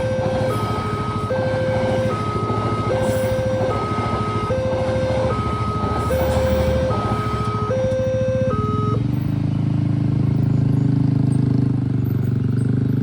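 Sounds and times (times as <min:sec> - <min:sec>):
two-tone crossing alarm: 0:00.0 - 0:09.3
low engine rumble: 0:00.0 - 0:13.0.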